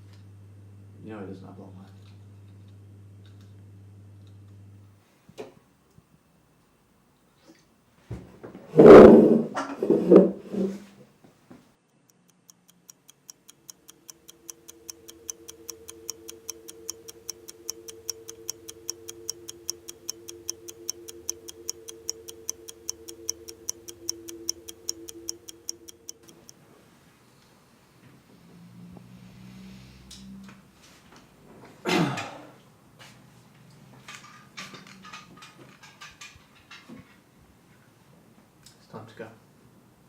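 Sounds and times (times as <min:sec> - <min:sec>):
watch ticking fast: 0:12.0 - 0:26.6
low two-note hum: 0:12.9 - 0:26.6.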